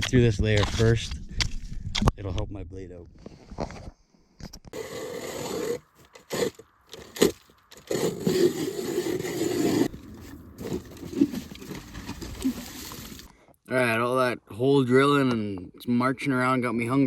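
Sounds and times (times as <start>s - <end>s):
ice chopping: 4.8s - 9.9s
ice grinding scrape: 4.8s - 13.3s.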